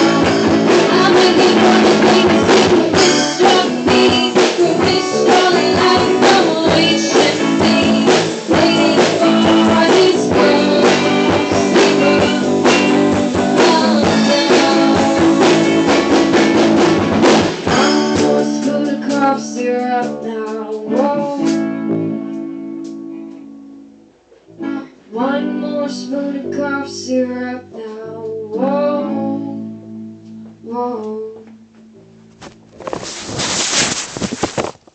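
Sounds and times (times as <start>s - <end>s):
drum kit beat: 0.0s - 20.2s
rock band playing: 0.0s - 23.7s
guitars: 0.0s - 34.9s.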